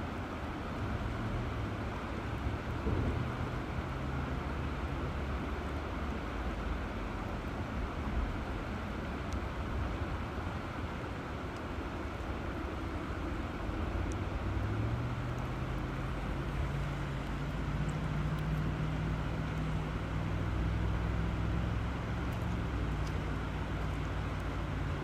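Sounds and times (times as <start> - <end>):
river water rushing: 0.0 - 25.0
low motor hum: 11.6 - 25.0.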